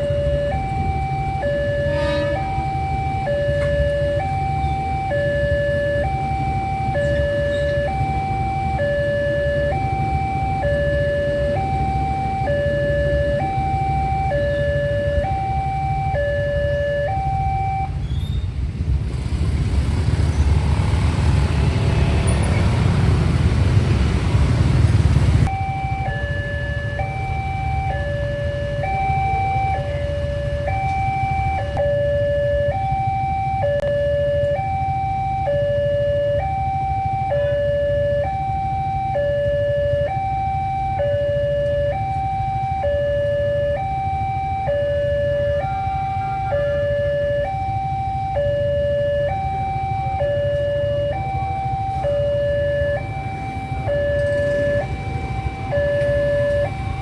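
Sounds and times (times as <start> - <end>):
two-note crossing alarm: 0.0 - 18.0, 25.4 - 57.0
loud rushing rumble: 18.6 - 25.5.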